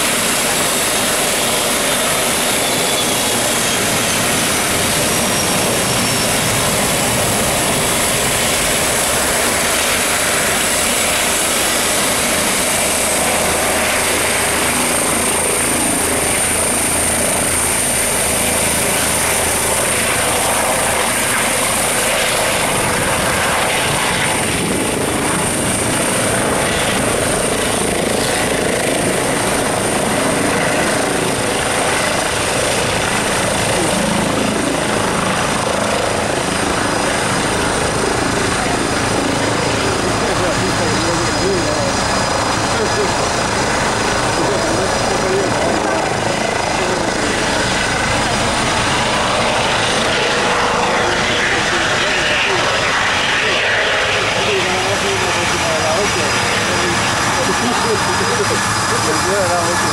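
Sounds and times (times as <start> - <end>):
helicopter rotor and engine: 0.0 - 59.9.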